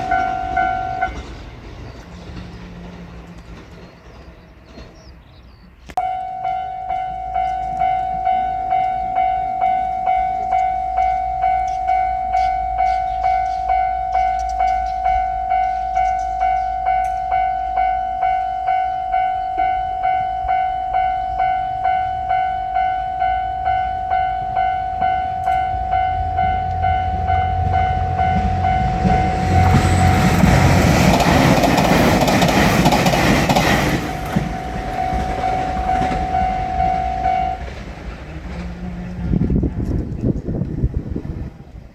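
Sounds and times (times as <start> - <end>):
level-crossing alarm dinging: 0.0 - 1.4, 6.0 - 38.0
diesel train rushing past: 0.0 - 41.9.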